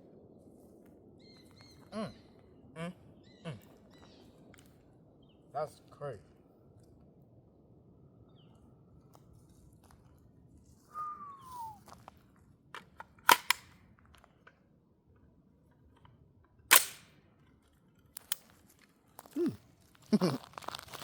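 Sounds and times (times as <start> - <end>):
faint gunshot cracks: 16.7 - 17.1
sharp gunshots: 16.7 - 17.1.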